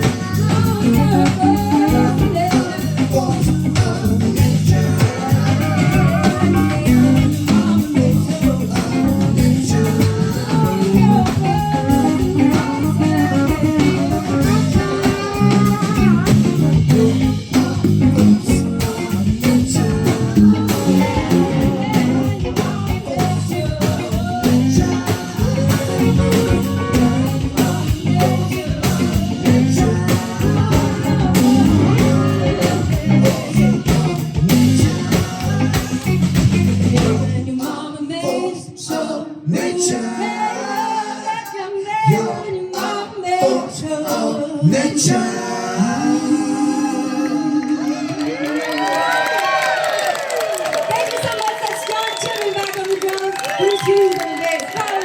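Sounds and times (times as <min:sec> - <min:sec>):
live band playing: 0:00.0 - 0:55.0
guitar melody: 0:11.0 - 0:36.8.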